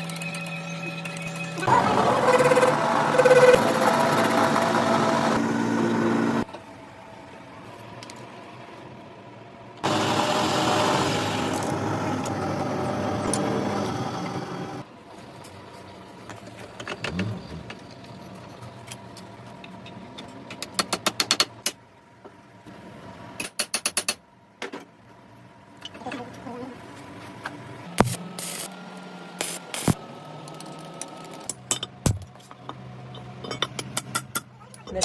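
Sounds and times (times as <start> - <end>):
loud grinding machine: 1.5 - 6.4, 9.8 - 14.8.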